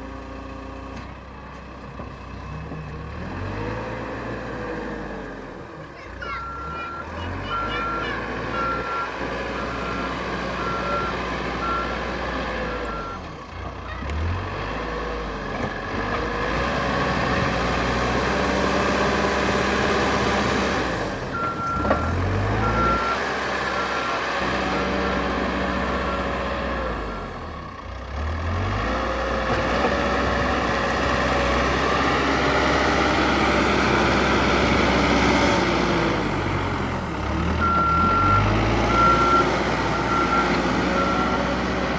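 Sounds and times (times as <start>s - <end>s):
backhoe diesel engine working: 0.0s - 41.9s
reversing alarm beeping: 6.3s - 12.0s, 12.7s - 13.2s, 21.3s - 24.2s, 37.6s - 41.5s.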